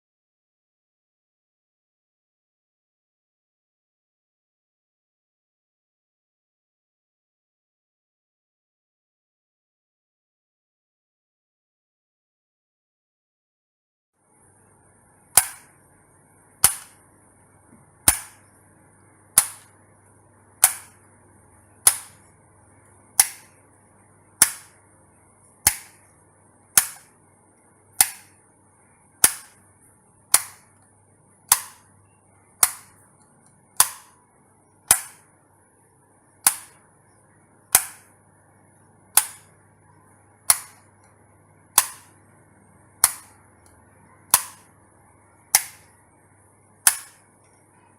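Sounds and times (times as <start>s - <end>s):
faint steady hum: 14.2s - 47.9s
light switch clicking: 29.2s - 29.6s, 31.5s - 31.9s, 32.6s - 33.0s, 33.8s - 34.2s, 34.9s - 35.2s, 40.5s - 41.1s, 41.7s - 42.2s, 43.0s - 44.7s, 46.8s - 47.2s.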